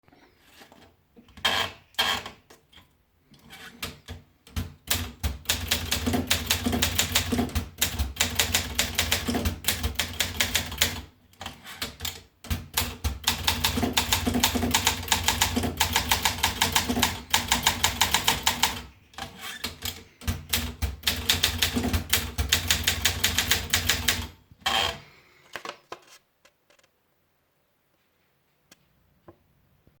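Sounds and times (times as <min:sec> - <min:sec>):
typewriter keystrokes: 0:03.8 - 0:24.4.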